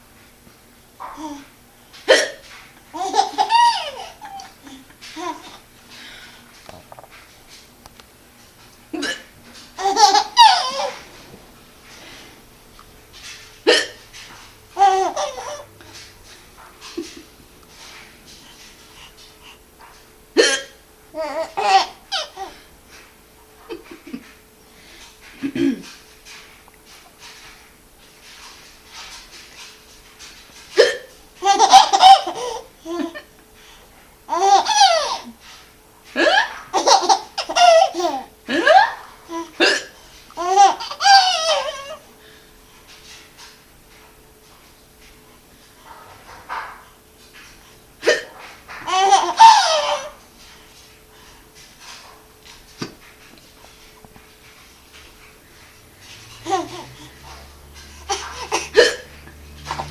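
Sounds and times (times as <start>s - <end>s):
baby laughing: 2.1s - 5.6s, 9.8s - 11.1s, 14.8s - 15.7s, 20.4s - 22.6s, 30.8s - 33.3s, 34.3s - 35.4s, 36.2s - 39.8s, 40.4s - 42.0s, 48.0s - 50.2s, 56.2s - 59.9s
woman hiccuping: 9.0s - 9.3s, 13.7s - 14.0s, 20.4s - 20.8s, 48.0s - 48.3s.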